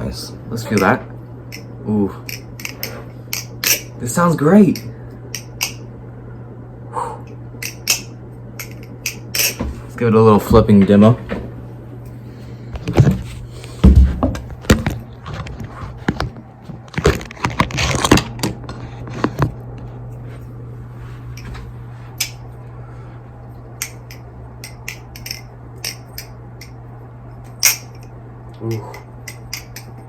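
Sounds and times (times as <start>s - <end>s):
low steady hum: 0.0s - 30.0s
butterfly knife handles clacking: 0.6s - 3.9s, 7.6s - 9.6s, 23.8s - 26.8s, 27.5s - 30.0s.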